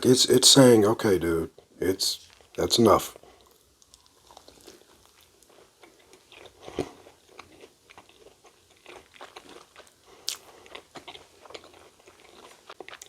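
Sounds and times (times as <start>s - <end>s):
crunchy chewing: 3.2s - 13.0s.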